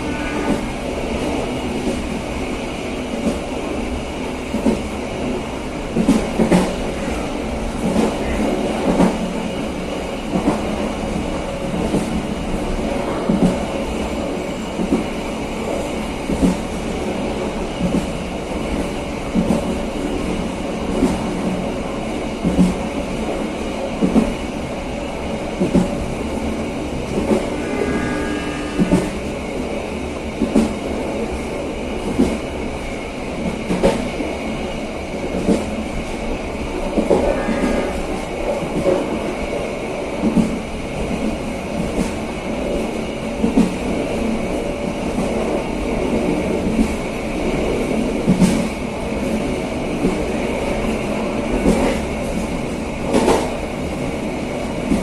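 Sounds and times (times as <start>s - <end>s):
train wheels rumbling on rails: 0.0s - 55.0s.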